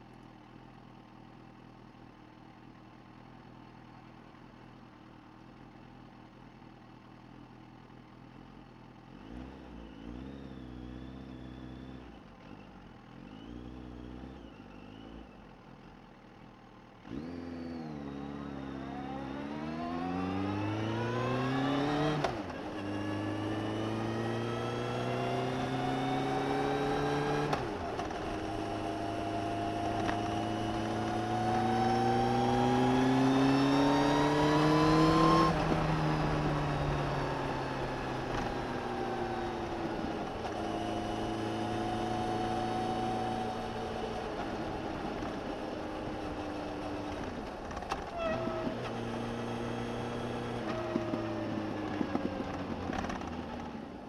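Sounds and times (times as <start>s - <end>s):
motorcycle engine revving: 17.0s - 54.0s.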